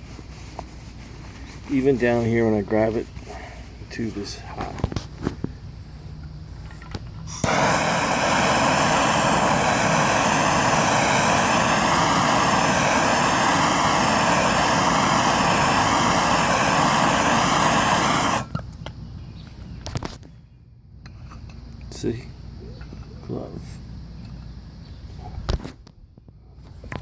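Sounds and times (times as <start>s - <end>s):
gas torch hissing: 7.2s - 18.6s.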